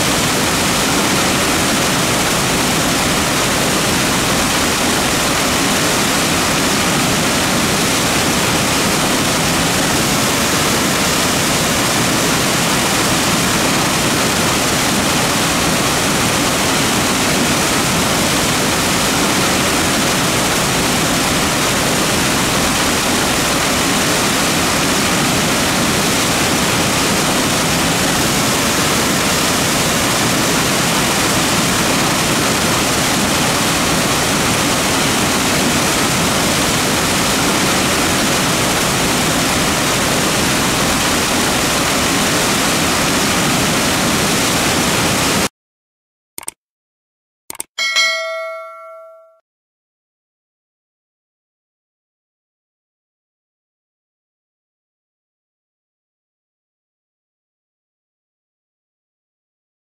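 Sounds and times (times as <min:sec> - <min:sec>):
creek water running: 0:00.0 - 0:45.4.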